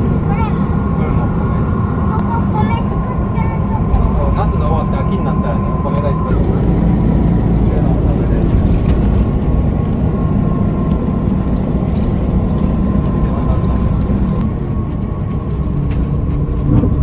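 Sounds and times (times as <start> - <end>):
bus engine and road rumble: 0.0 - 17.0.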